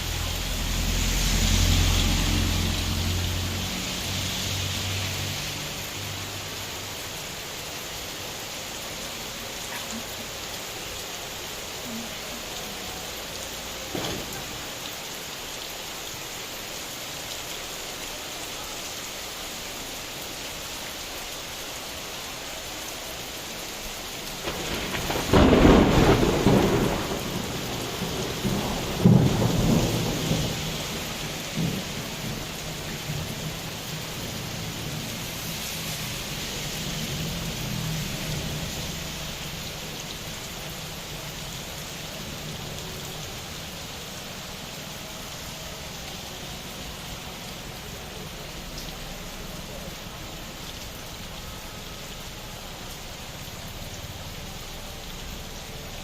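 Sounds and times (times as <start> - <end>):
heavy rain: 0.0 - 56.0
thunder clap and rumbling: 24.4 - 33.6.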